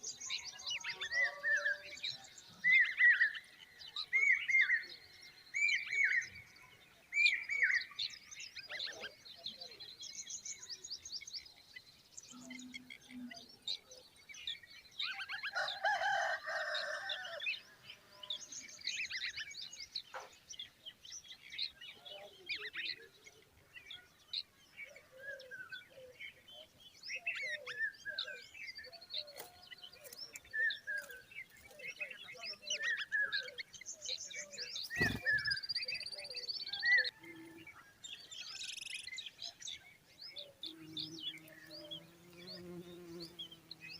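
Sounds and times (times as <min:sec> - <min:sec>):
birds chirping and whistling: 0:24.8 - 0:43.9.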